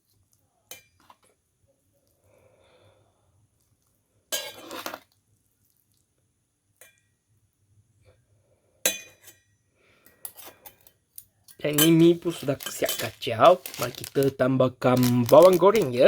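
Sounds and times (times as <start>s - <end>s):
utensil clinking and scraping bowl: 4.3s - 5.0s, 11.5s - 16.0s.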